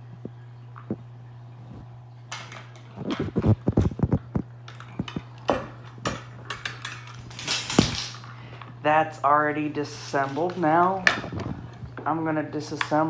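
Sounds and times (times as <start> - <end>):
faint low hum: 0.0 - 13.0
plastic clips clicking: 2.3 - 8.7.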